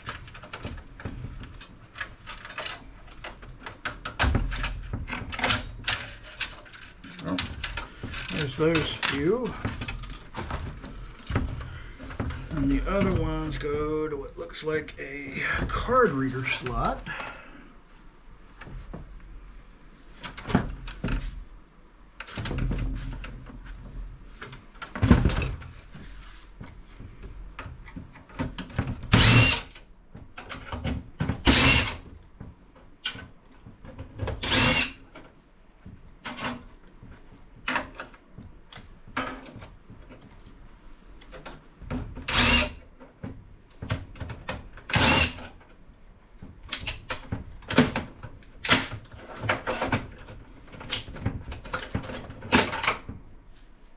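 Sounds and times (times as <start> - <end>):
metal parts clicking and knocking: 0.0 - 11.5
cordless drill whirring: 29.1 - 29.7, 31.4 - 32.0, 34.4 - 35.0, 42.3 - 42.8, 44.9 - 45.4.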